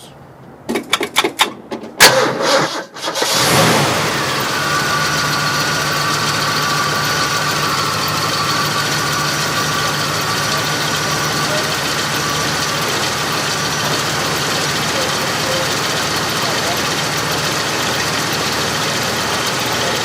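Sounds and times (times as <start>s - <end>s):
starter clicks and knocks: 0.6s - 2.0s
car engine starting and idling: 1.2s - 20.0s.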